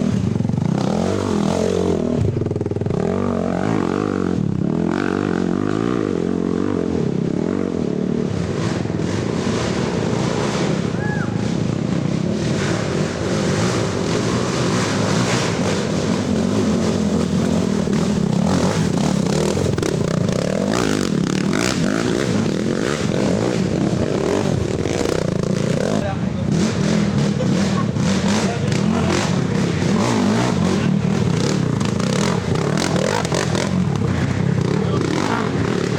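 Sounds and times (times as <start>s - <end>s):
atv engines revving: 0.0s - 35.9s.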